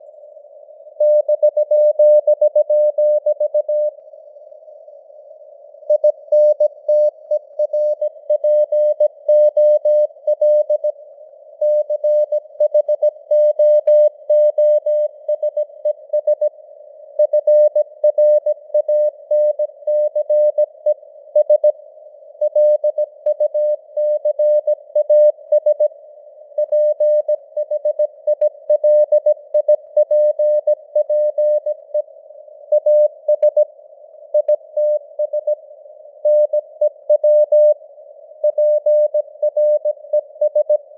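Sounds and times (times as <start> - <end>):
morse code beeps: 38.5 - 40.8.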